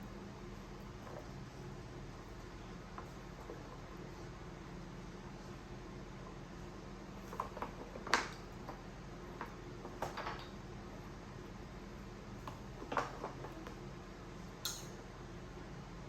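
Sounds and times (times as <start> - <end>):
steady low hum: 0.0 - 16.0
spoon tapping a bowl: 14.7 - 14.9.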